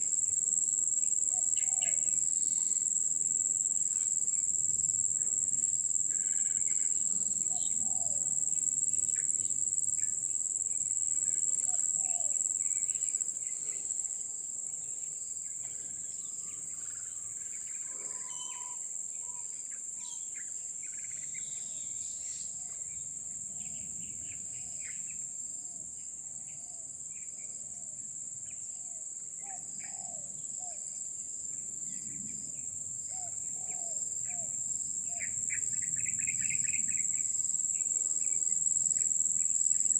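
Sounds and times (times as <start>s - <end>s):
high-pitched insect drone: 0.0s - 19.8s.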